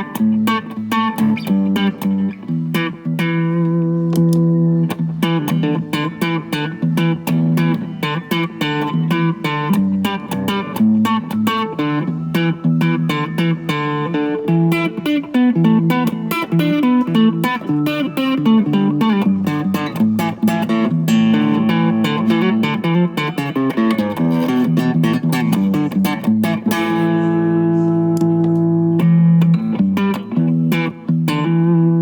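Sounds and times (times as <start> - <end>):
slap electric guitar: 0.0 - 32.0.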